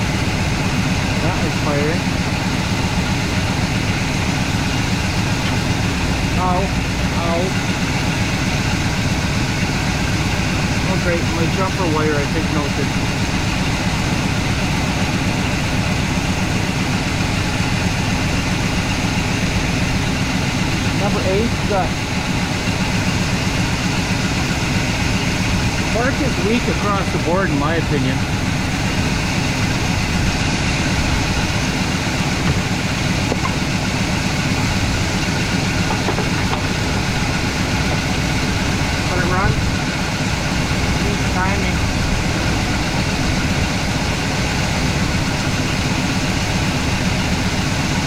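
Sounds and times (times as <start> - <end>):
engine idling: 0.0 - 48.0.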